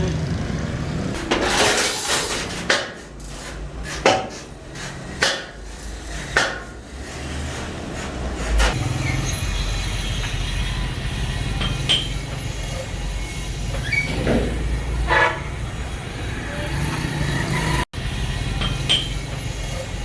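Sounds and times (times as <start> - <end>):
hammer striking metal: 5.1 - 6.9.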